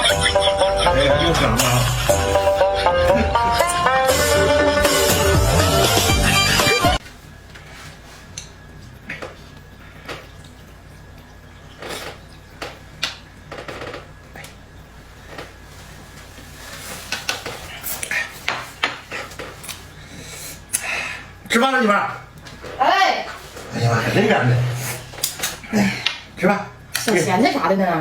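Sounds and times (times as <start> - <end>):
background music: 0.0 - 7.0.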